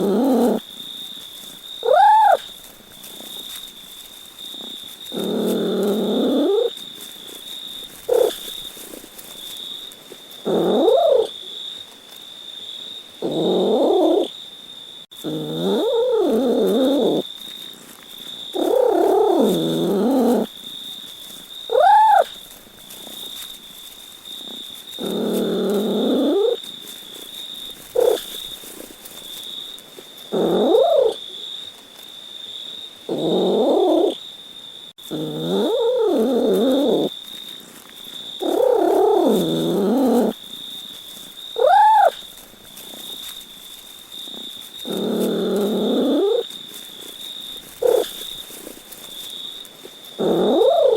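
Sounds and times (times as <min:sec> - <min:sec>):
cat meowing: 0:01.8 - 0:02.4, 0:10.5 - 0:11.3, 0:21.7 - 0:22.4, 0:28.0 - 0:28.2, 0:30.4 - 0:31.2, 0:41.6 - 0:42.2.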